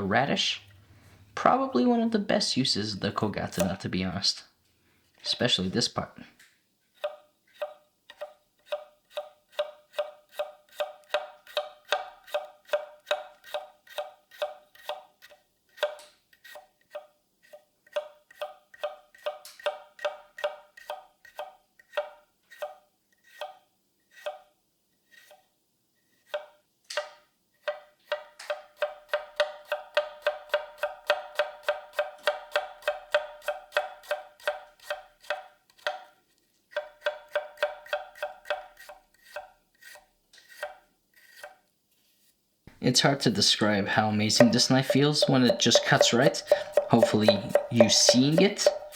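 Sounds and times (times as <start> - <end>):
knife chopping on cutting board: 7.0 - 15.0, 27.7 - 36.0, 36.8 - 39.5, 44.3 - 48.9.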